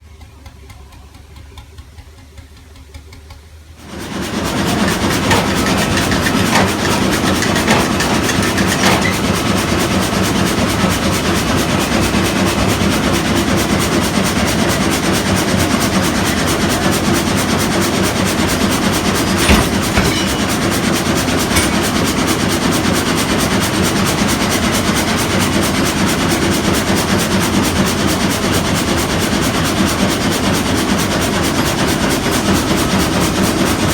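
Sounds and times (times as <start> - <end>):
frame saw mechanical clatter: 3.8 - 25.0.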